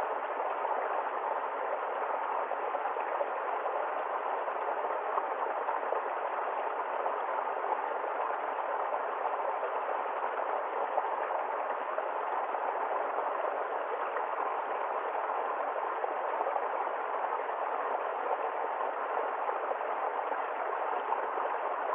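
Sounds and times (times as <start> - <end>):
babbling stream: 0.0 - 21.9.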